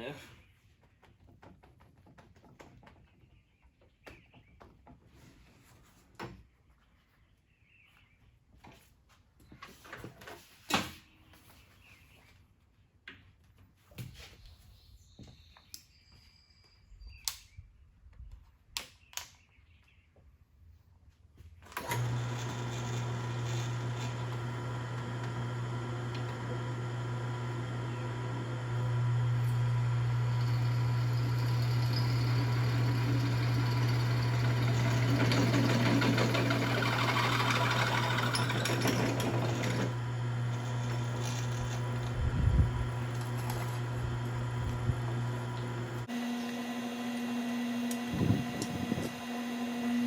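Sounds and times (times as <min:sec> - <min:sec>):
electric drill motor running: 0:21.8 - 0:50.0.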